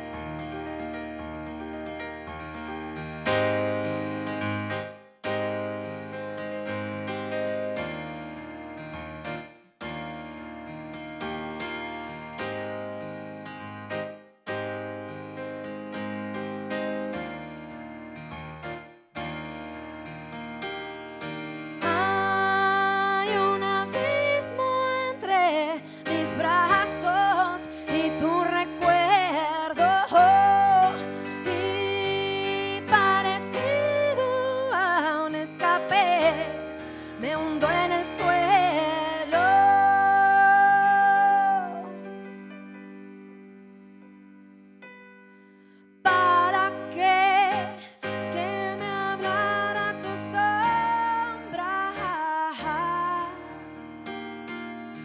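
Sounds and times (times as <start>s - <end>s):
keyboard chords: 0.0s - 55.0s
woman singing: 21.6s - 42.1s, 46.1s - 53.6s.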